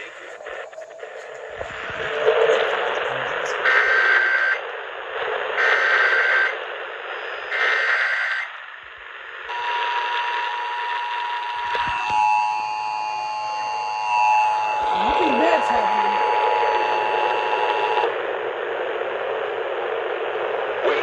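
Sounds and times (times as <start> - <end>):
radio hiss: 0.0 - 10.5, 14.5 - 21.0
steady attention tone: 9.5 - 18.1.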